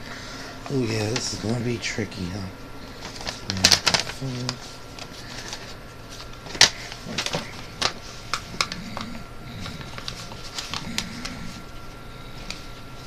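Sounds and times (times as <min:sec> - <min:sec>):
paper crinkling and folding: 0:00.6 - 0:13.0.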